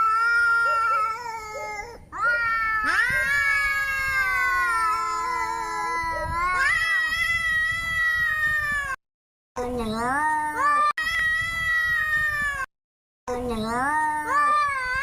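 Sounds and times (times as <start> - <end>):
cat yowling: 0.0 - 9.0.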